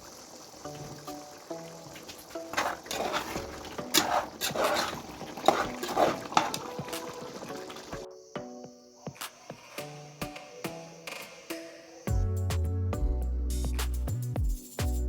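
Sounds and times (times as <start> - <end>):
soft background music: 0.6 - 15.0
spoon scraping a pot: 2.5 - 8.0.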